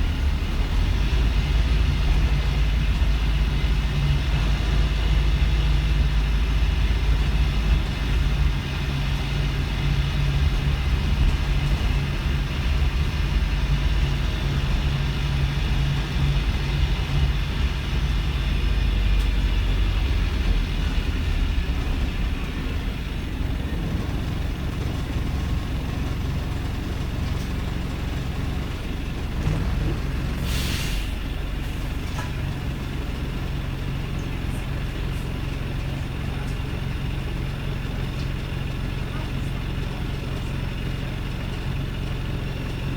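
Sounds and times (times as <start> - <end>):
diesel engine rough idle: 0.0 - 42.9
hiss of air: 30.4 - 31.2.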